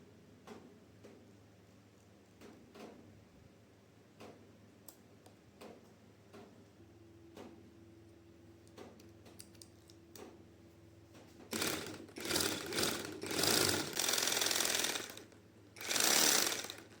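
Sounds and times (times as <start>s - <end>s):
woodworking tool bursts: 11.5s - 17.0s.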